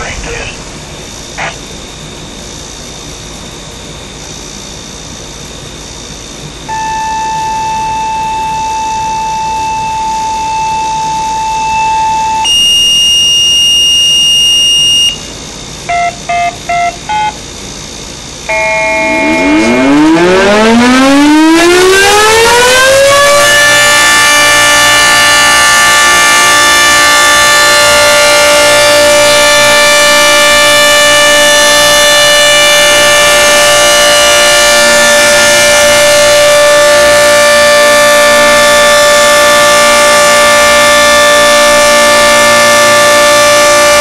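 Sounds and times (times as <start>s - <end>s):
radio tones and beeps: 0.0s - 1.7s, 6.7s - 15.2s, 15.9s - 17.4s, 18.5s - 20.2s
tornado siren winding up: 6.6s - 17.4s, 18.4s - 44.0s.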